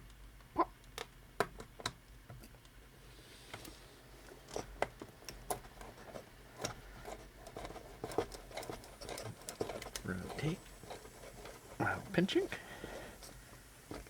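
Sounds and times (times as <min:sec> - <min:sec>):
plastic parts clicking and tapping: 0:04.5 - 0:11.6.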